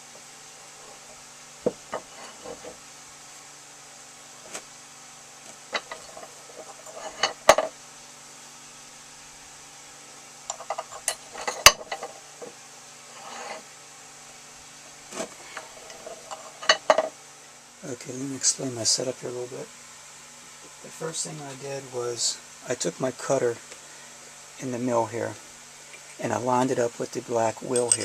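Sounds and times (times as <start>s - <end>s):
faint steady hum: 0.0s - 28.0s
metal tools clinking: 27.6s - 28.0s.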